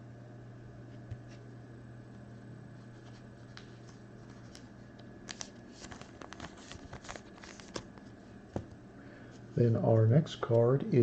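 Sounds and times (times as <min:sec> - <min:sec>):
low electrical hum: 0:00.0 - 0:11.0
cards rustling and clicking: 0:03.0 - 0:08.8.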